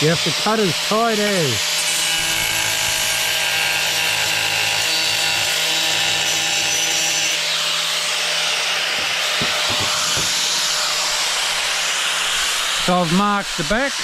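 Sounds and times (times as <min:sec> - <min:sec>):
angle grinder cutting tile: 0:00.0 - 0:14.0
light knocks: 0:09.0 - 0:10.6
steady hiss: 0:09.7 - 0:14.0.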